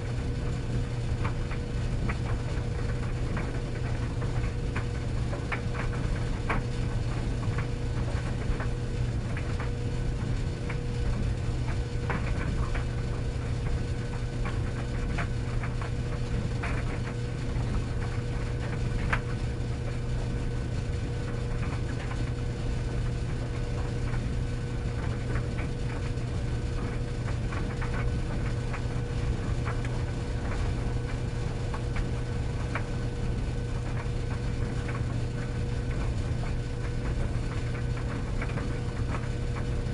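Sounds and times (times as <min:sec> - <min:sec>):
tumble dryer motor hum: 0:00.0 - 0:39.9
light clicks and taps in drum: 0:01.2 - 0:09.9, 0:10.6 - 0:12.9.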